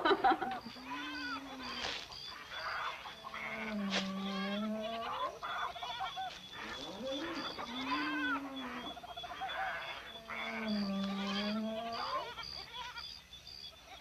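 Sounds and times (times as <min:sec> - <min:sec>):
swooping animal-like calls: 0:00.2 - 0:14.0.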